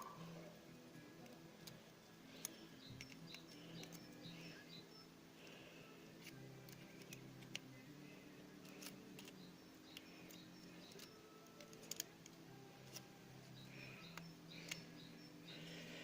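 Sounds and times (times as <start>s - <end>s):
low steady hum: 0.0s - 16.0s
clicks of small parts and tools: 2.4s - 4.1s, 6.2s - 7.7s, 8.6s - 13.1s, 14.0s - 14.9s.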